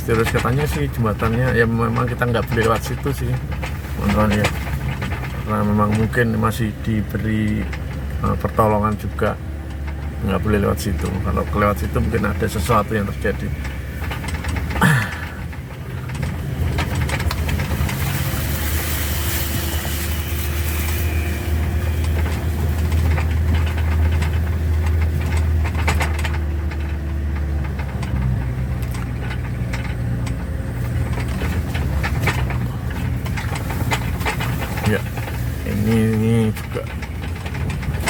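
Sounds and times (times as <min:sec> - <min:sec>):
road noise: 0:00.0 - 0:38.0
vehicle engine running: 0:00.0 - 0:38.0.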